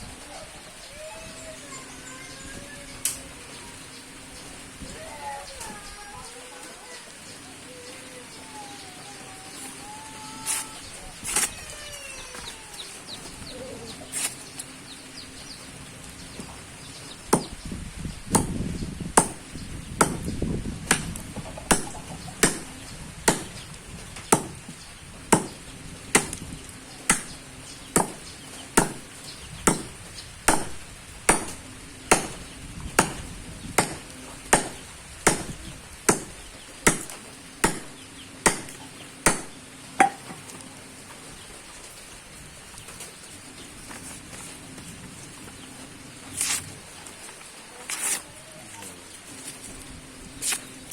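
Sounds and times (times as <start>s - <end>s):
knife chopping: 20.0s - 20.3s, 29.7s - 29.9s, 30.5s - 32.4s, 33.0s - 33.2s, 36.1s - 36.3s, 38.5s - 40.2s.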